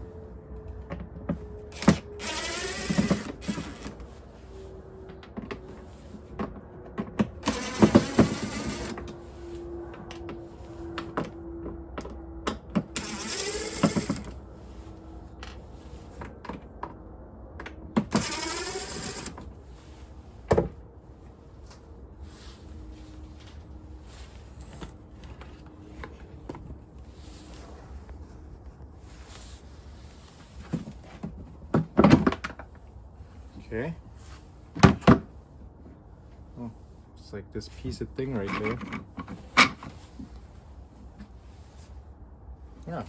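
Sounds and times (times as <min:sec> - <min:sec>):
cordless drill running: 0:01.7 - 0:04.0, 0:07.4 - 0:09.0, 0:13.0 - 0:14.4, 0:18.1 - 0:19.5.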